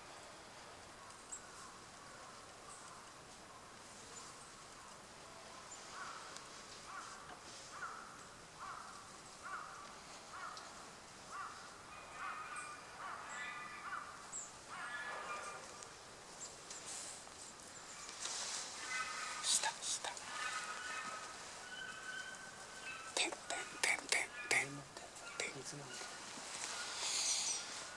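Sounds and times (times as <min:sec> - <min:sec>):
loud full bird calls: 0:00.1 - 0:15.8, 0:16.4 - 0:27.9
faint thin high bird calls: 0:17.8 - 0:27.9.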